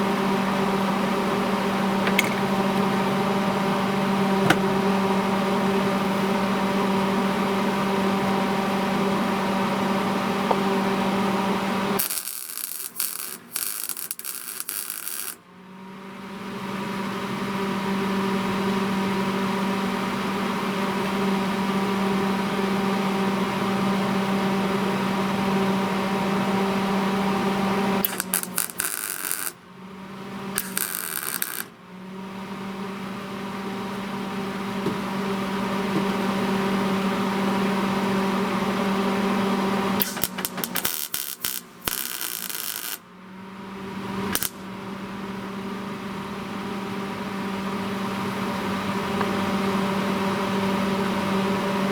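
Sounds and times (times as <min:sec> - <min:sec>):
machine hum: 0:00.0 - 0:51.9
crackling welding arc: 0:12.0 - 0:15.4, 0:28.0 - 0:29.6, 0:30.6 - 0:31.7, 0:40.0 - 0:43.0, 0:44.3 - 0:44.6.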